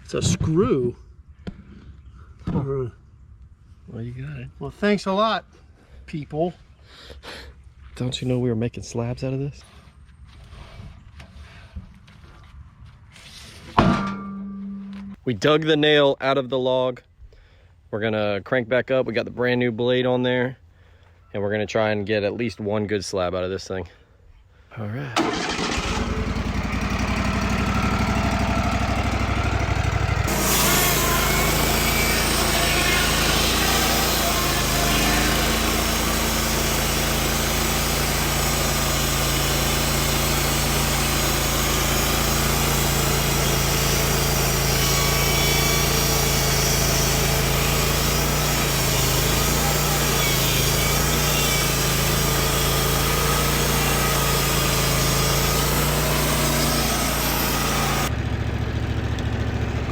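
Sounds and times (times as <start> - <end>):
sawmill engine running: 25.2 - 59.9.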